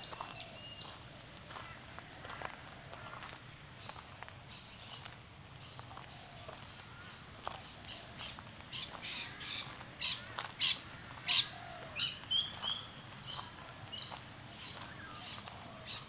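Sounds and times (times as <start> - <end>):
bird squawking calls: 5.9 - 16.0.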